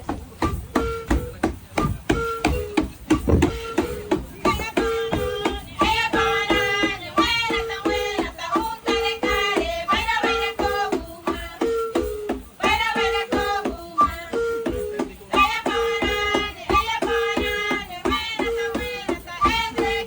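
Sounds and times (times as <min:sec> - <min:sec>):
voices singing: 0:00.3 - 0:20.0
held instrumental note: 0:01.3 - 0:04.2
percussive beat: 0:01.8 - 0:04.1.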